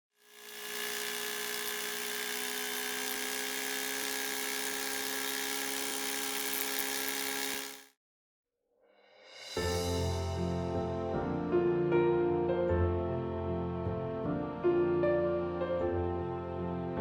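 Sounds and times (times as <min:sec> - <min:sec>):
electric buzzing hum: 0:00.2 - 0:07.8.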